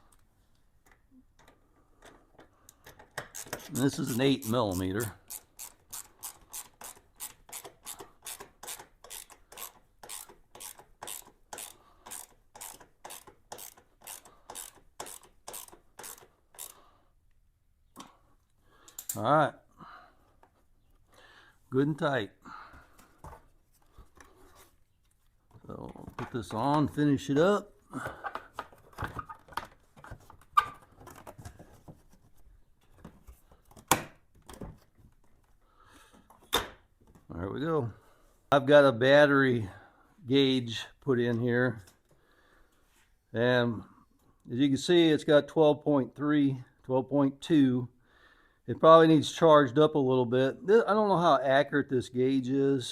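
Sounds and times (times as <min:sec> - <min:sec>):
ratchet wrench rasping: 0:03.2 - 0:16.8.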